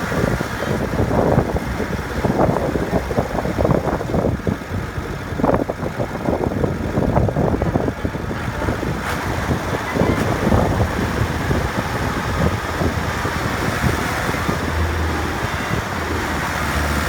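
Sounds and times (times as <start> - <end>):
diesel engine churning: 0.0 - 17.0.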